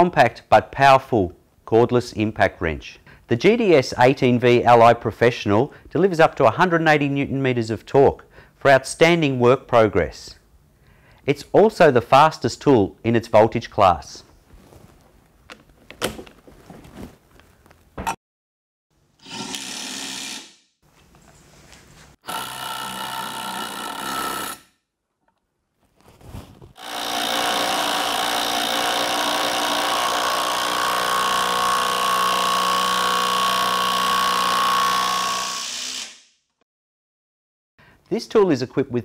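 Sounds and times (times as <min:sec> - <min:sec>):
cordless impact wrench running: 0:22.3 - 0:24.6, 0:26.8 - 0:36.1.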